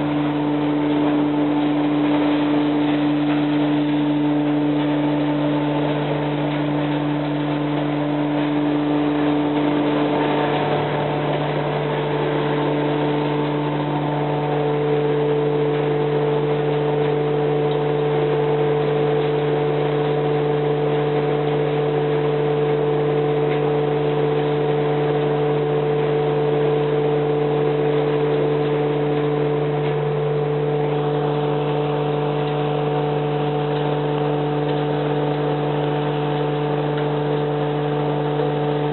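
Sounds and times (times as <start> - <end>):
trommel screen machine drone: 0.0 - 38.9.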